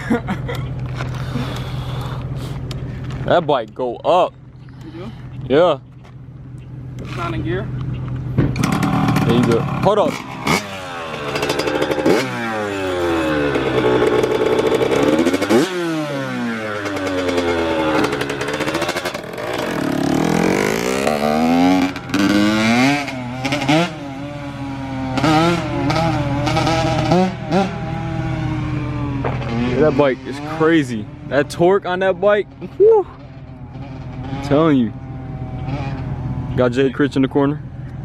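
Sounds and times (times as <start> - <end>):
dirt bike engine revving: 8.5 - 36.9.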